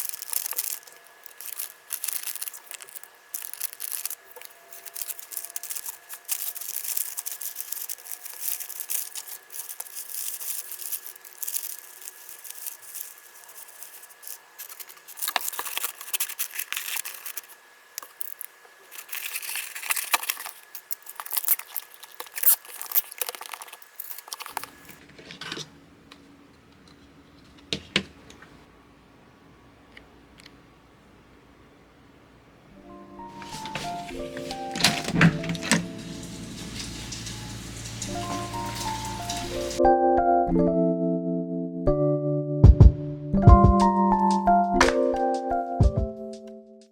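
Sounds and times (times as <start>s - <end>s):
packaging crinkling and tearing: 0.0s - 25.7s, 33.2s - 39.8s.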